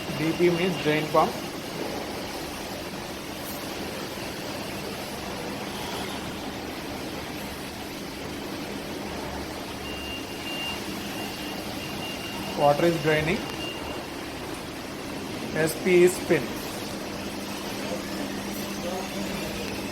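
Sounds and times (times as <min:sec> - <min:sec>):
washing machine drain pump humming: 0:00.0 - 0:19.9.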